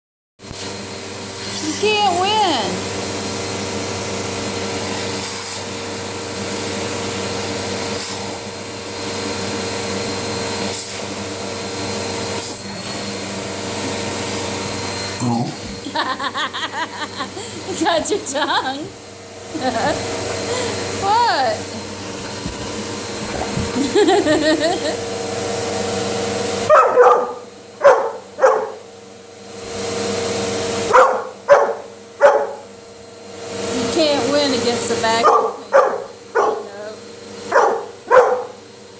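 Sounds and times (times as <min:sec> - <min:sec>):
vacuum cleaner motor running: 0:00.5 - 0:38.9
dog barking: 0:26.6 - 0:28.9, 0:30.9 - 0:32.7, 0:35.2 - 0:36.8, 0:37.5 - 0:38.7.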